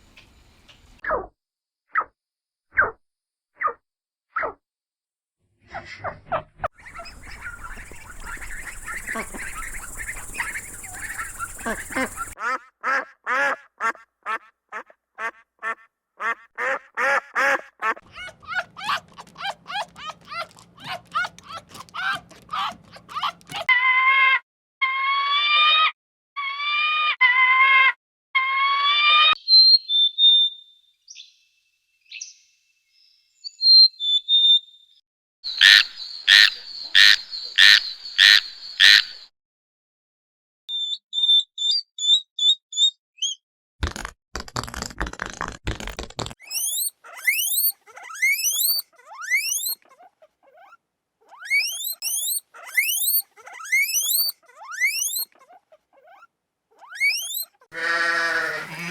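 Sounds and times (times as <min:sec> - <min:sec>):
quick rising chirps: 0:06.8 - 0:12.4
thin whistles: 0:06.8 - 0:12.4, 0:46.4 - 0:49.8, 0:51.4 - 0:55.3, 0:56.9 - 0:57.6
wavering animal calls: 0:06.8 - 0:12.4, 0:46.5 - 0:58.9
sharp repeated calls: 0:06.9 - 0:12.4, 0:35.5 - 0:39.2, 0:46.4 - 0:49.9, 0:51.4 - 0:55.4, 0:56.9 - 0:58.9.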